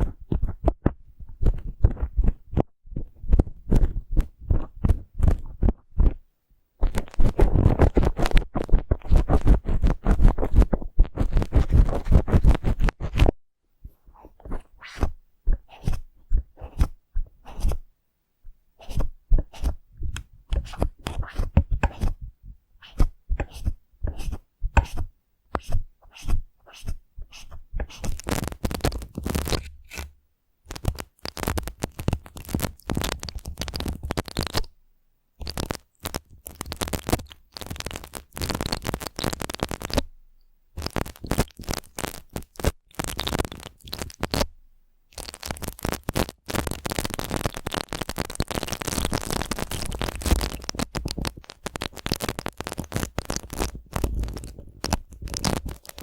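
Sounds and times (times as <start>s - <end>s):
prickly brush strokes: 18.8s - 19.8s, 22.8s - 30.0s.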